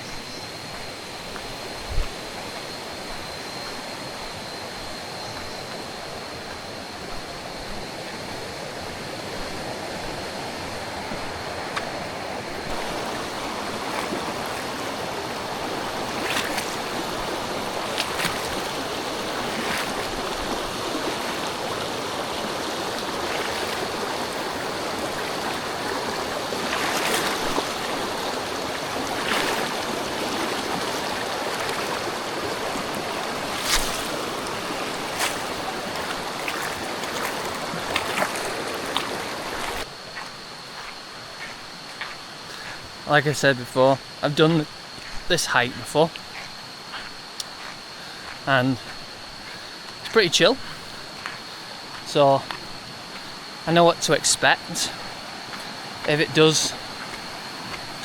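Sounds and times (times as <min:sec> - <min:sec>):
river water rushing: 0:08.1 - 0:39.9
sharp knocks or splashes: 0:33.5 - 0:34.2.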